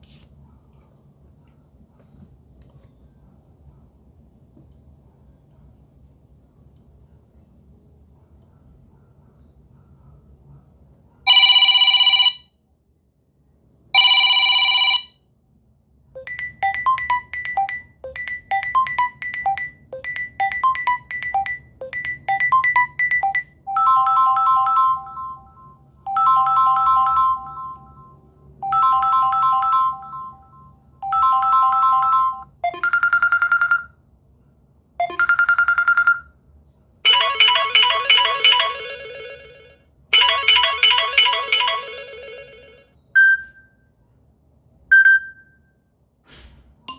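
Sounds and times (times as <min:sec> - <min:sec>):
phone ringtone melodies: 0:14.0 - 0:15.1, 0:16.2 - 0:33.9, 0:35.0 - 0:36.3, 0:37.1 - 0:42.9.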